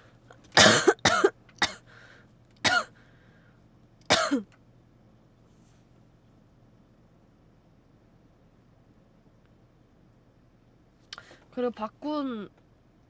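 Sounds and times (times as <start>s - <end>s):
person coughing: 0.6s - 1.8s, 2.7s - 2.9s, 4.1s - 4.4s.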